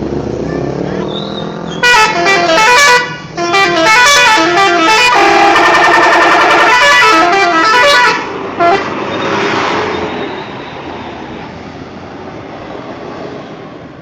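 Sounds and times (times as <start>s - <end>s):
bus engine driving away: 0.0s - 14.0s
bus musical horn: 1.8s - 9.0s.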